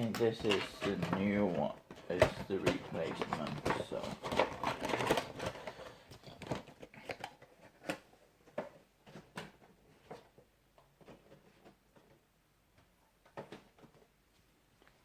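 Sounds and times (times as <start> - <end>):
cardboard packaging crinkling: 0.0 - 8.1.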